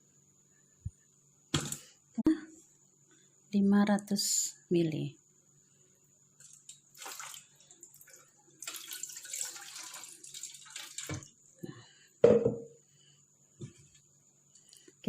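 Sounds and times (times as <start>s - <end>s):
water pouring into pot: 6.4s - 11.4s
cookware knocking and clanking: 12.2s - 12.7s.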